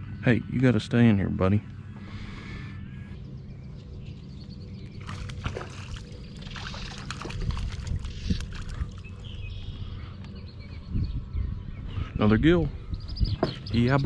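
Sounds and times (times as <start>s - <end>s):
water splashing beside a boat: 5.0s - 9.2s.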